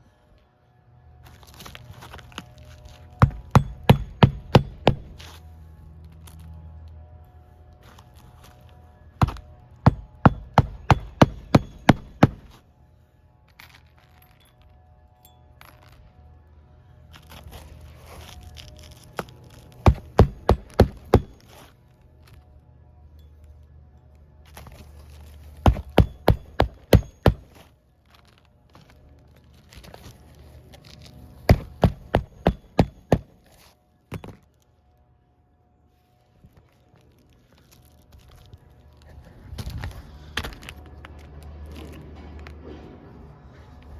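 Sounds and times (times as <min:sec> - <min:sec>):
hammer blows: 0:03.2 - 0:05.4, 0:09.2 - 0:12.6, 0:19.9 - 0:21.6, 0:25.7 - 0:27.6, 0:31.5 - 0:33.5.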